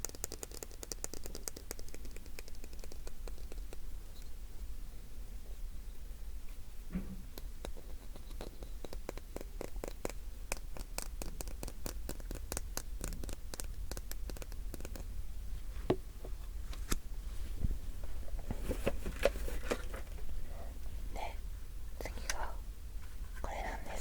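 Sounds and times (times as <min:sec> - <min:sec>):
clicks and taps on small object: 0:00.0 - 0:03.8, 0:07.3 - 0:15.1
scratching: 0:07.3 - 0:16.0.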